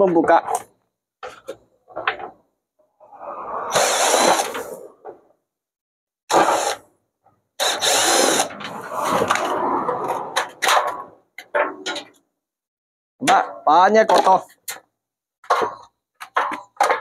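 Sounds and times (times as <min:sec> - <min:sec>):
cordless drill running: 0:07.6 - 0:08.4.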